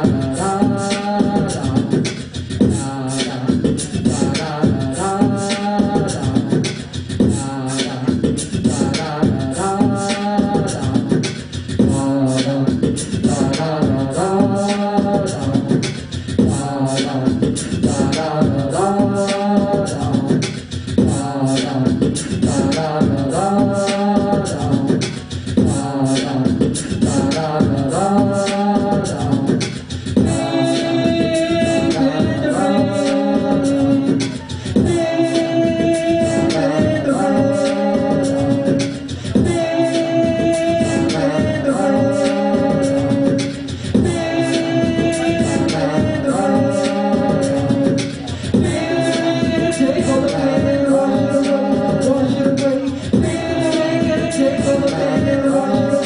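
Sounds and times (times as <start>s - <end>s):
layered sung vocal phrase: 0.0s - 11.2s, 11.8s - 20.4s, 21.0s - 56.0s
looped beatboxed beat: 0.0s - 56.0s.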